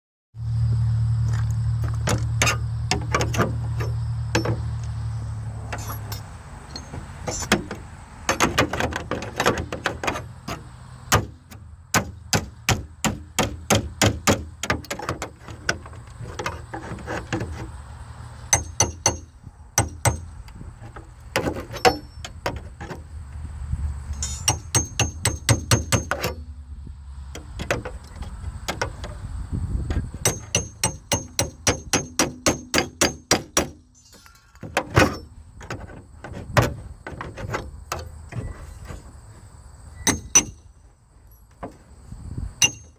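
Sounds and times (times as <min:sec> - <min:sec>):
sharp knocks and taps: 0:06.8 - 0:17.7, 0:27.4 - 0:29.2, 0:29.9 - 0:33.8.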